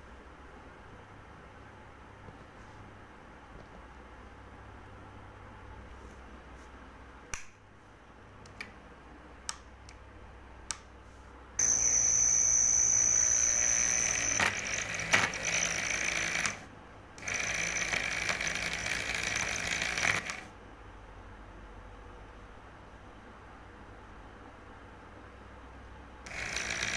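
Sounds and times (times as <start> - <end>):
small electric motor whining: 11.6 - 20.5, 26.3 - 26.9.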